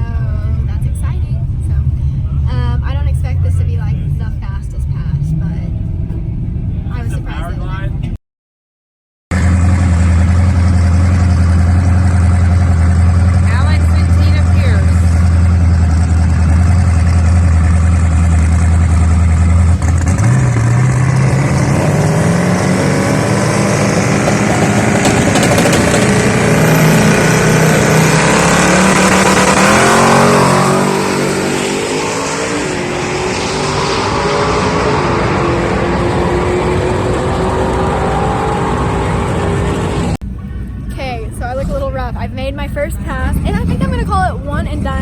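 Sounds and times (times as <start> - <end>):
drag car engine revving: 9.3 - 45.0.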